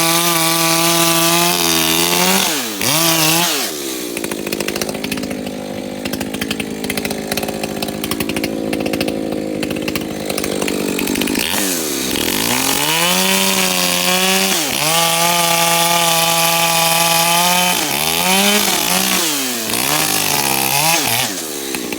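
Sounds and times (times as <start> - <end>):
chainsaw revving: 0.0 - 21.9.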